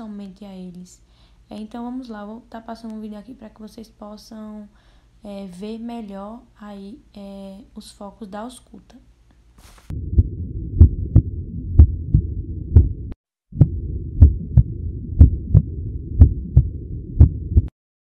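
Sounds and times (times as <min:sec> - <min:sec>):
heartbeat through stethoscope: 0:09.9 - 0:17.7.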